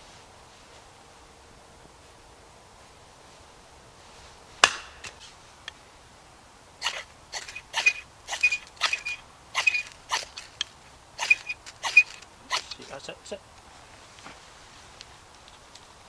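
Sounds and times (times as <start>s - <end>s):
sharp crack: 4.6s - 5.2s
ferro rod scraping: 6.8s - 13.0s.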